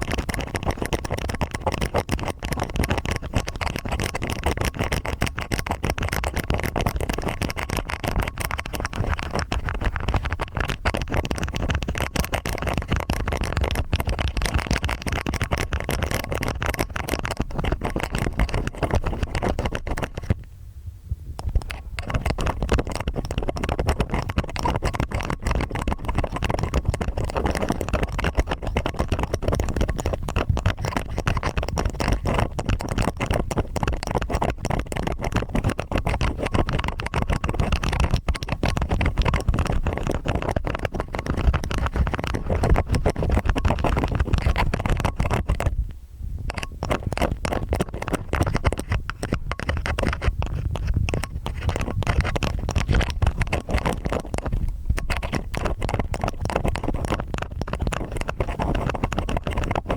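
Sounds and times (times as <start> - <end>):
ear picks scraping: 0.0 - 20.5, 21.4 - 59.9.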